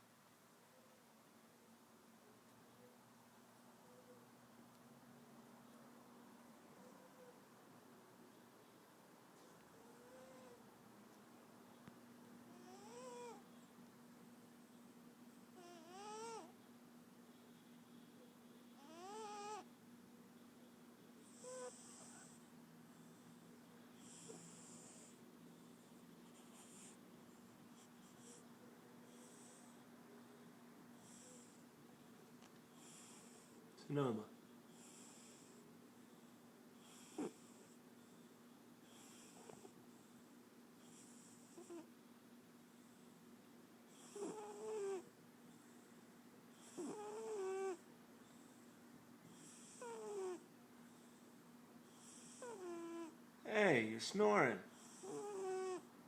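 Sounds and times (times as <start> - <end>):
cat snoring: 9.8 - 10.6, 12.5 - 13.5, 15.5 - 16.6, 18.8 - 19.7, 21.2 - 23.4, 24.0 - 28.5, 29.1 - 29.8, 31.0 - 31.6, 32.7 - 33.6, 34.7 - 35.6, 36.8 - 38.2, 38.8 - 40.2, 40.8 - 41.9, 43.9 - 45.9, 46.5 - 53.2, 54.7 - 55.9.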